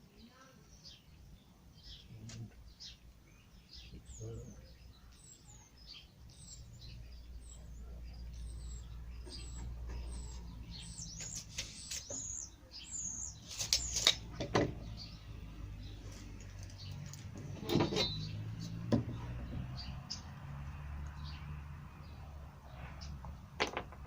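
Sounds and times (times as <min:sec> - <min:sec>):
small birds chirping: 0:00.0 - 0:24.0
sharp knocks and clatters: 0:13.6 - 0:14.9, 0:16.9 - 0:19.7, 0:22.8 - 0:24.0.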